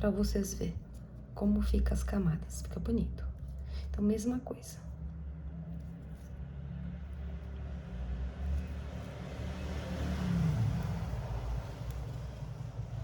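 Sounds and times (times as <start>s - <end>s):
motor vehicle rumbling: 0.0s - 13.0s.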